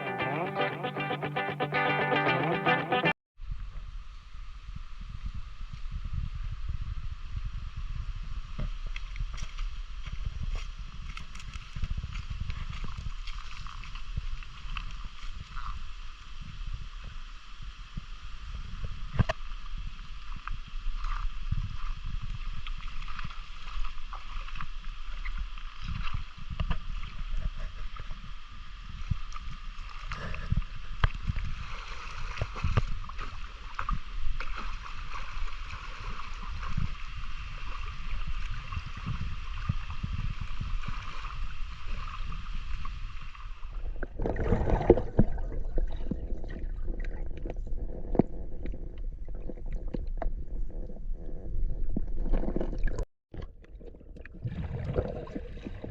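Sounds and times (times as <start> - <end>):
water sloshing and splashing: 10.4 - 15.8, 20.2 - 28.0, 29.2 - 50.8, 51.8 - 55.9.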